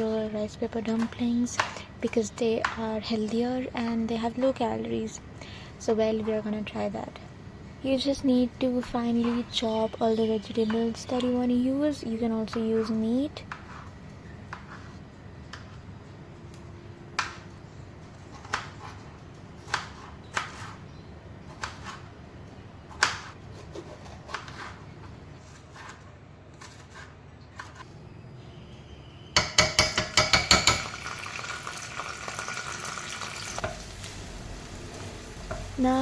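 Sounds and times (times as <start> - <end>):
knife chopping on cutting board: 18.3 - 19.0, 19.6 - 20.8, 22.9 - 24.8
vegetables sizzling in hot pan: 30.8 - 36.0.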